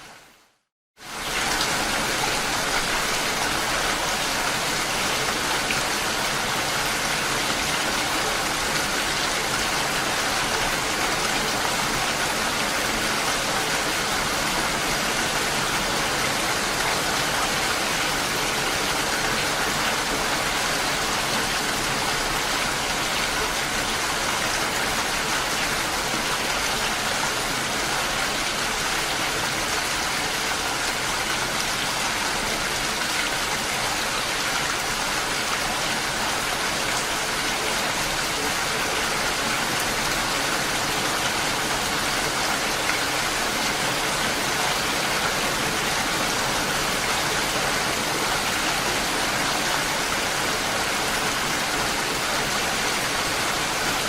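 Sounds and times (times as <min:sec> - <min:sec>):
steady rainfall: 0:00.0 - 0:54.0.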